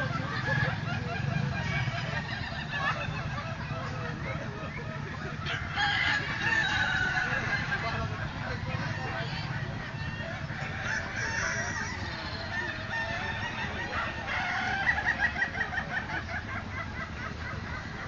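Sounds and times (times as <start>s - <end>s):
roosters crowing: 0.0s - 18.0s
rooster laughing staccato crow: 5.3s - 8.1s, 10.2s - 18.0s.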